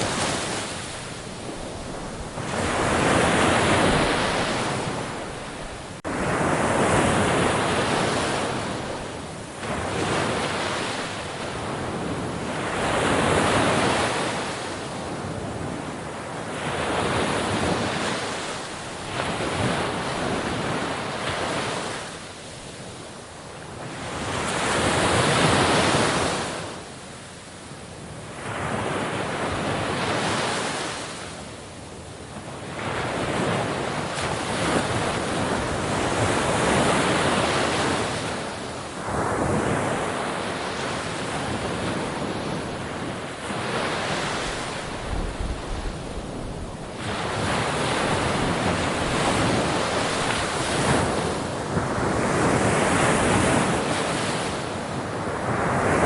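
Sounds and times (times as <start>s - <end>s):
sea waves breaking: 0.0s - 14.8s, 32.8s - 56.0s
wind noise on microphone: 0.0s - 26.9s, 32.2s - 56.0s.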